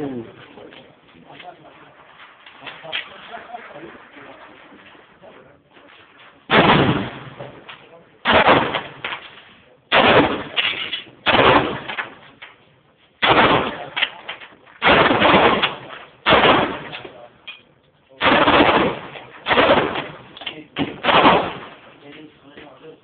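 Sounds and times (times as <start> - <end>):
pistol shots: 6.5 - 9.3, 9.9 - 12.4, 13.2 - 17.3, 18.2 - 21.9.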